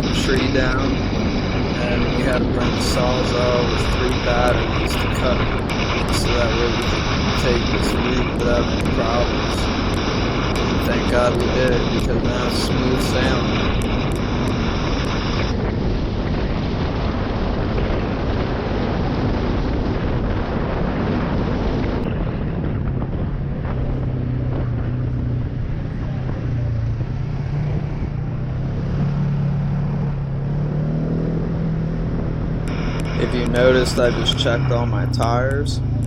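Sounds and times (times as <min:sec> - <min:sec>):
wind noise on microphone: 0:00.0 - 0:36.0
atv engine running: 0:12.0 - 0:36.0.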